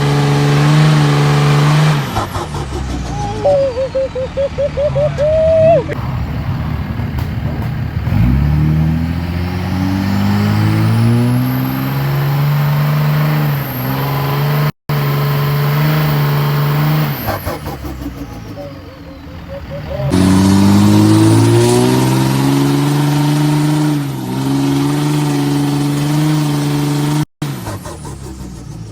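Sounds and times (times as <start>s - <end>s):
diesel engine revving: 0.0s - 28.9s
turbo whistle: 3.0s - 6.0s
turbo flutter: 27.5s - 28.9s.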